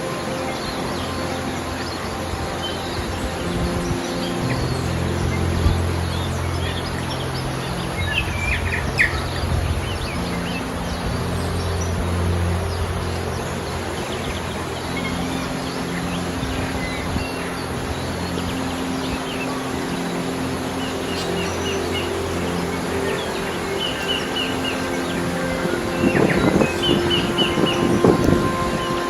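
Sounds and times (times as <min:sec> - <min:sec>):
low held notes: 0:00.0 - 0:29.0
mountain stream rushing: 0:00.0 - 0:29.0
small birds chirping: 0:16.2 - 0:29.0.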